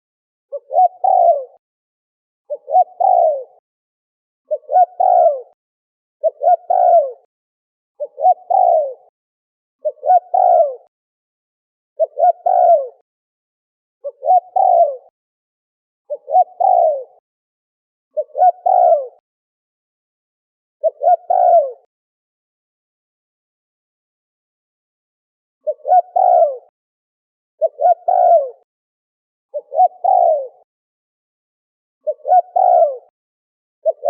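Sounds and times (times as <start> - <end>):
dove cooing: 0.5 - 1.6, 2.5 - 3.6, 4.5 - 5.6, 6.2 - 7.3, 8.0 - 9.1, 9.8 - 10.9, 12.0 - 13.0, 14.0 - 15.1, 16.1 - 17.2, 18.2 - 19.2, 20.8 - 21.9, 25.6 - 26.7, 27.6 - 28.7, 29.5 - 30.7, 32.0 - 33.1.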